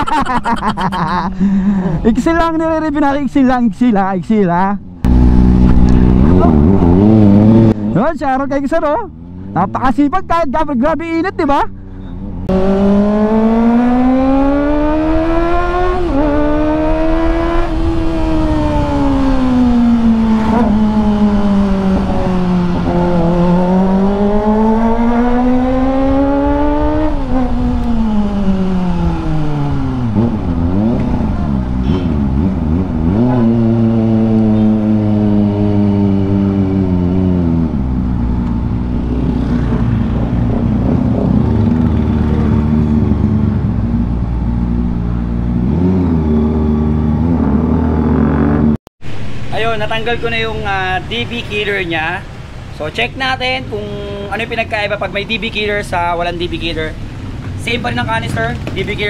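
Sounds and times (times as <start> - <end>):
motorcycle engine revving: 4.9 - 8.0, 11.8 - 48.8.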